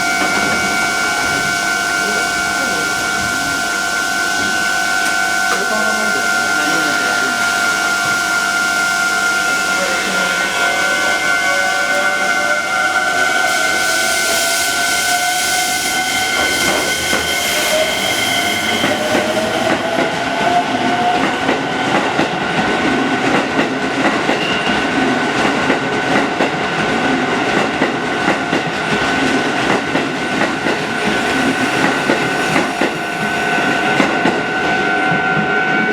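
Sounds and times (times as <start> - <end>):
steady high tone: 0.0 - 21.7
train motor whine: 0.0 - 22.2, 28.9 - 35.9
train wheels clattering on rails: 0.0 - 35.9.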